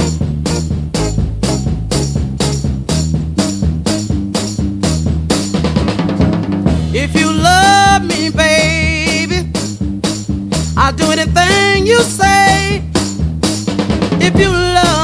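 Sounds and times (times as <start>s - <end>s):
lead instrument bent notes: 0.0s - 6.1s
bass line: 0.0s - 15.0s
drum kit beat: 0.0s - 15.0s
drum roll: 0.0s - 15.0s.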